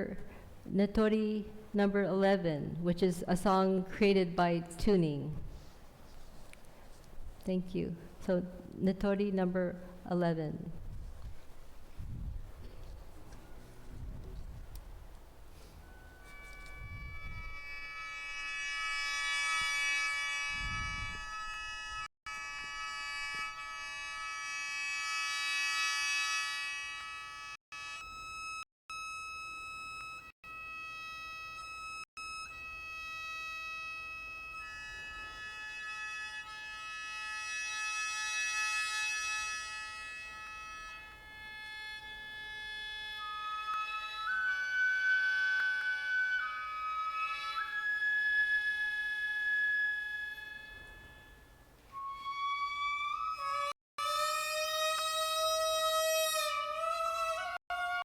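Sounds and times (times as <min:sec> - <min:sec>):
high flute tone sliding up: 0:15.6 - 0:58.0.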